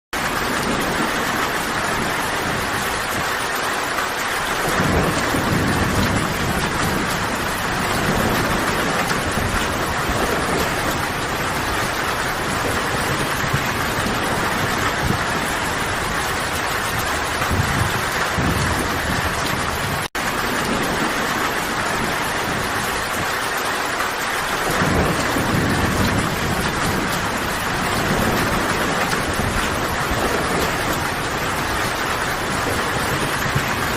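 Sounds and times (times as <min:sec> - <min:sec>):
heavy rainfall: 0:00.1 - 0:33.9
thunder rumbling: 0:00.2 - 0:33.9.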